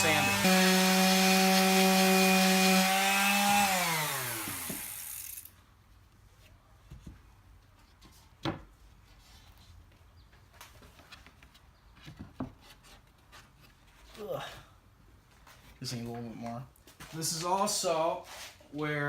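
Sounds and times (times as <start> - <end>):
electric sander on wood: 0.0 - 5.3.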